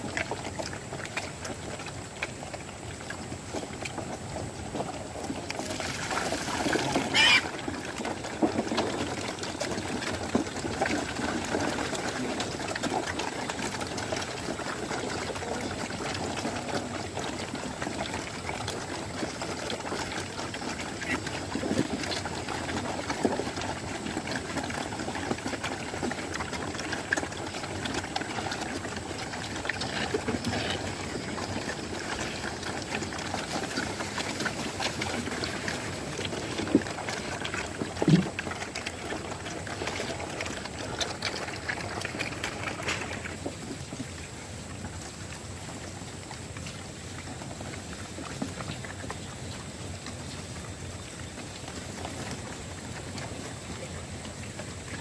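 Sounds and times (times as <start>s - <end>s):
water running and splashing: 5.6s - 10.8s.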